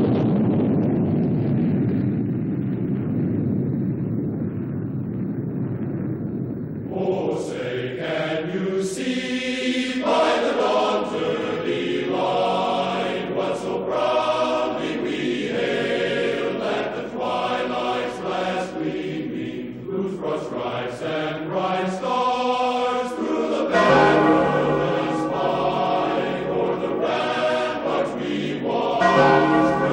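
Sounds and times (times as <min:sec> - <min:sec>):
choir singing chant-like notes: 0:06.9 - 0:29.9.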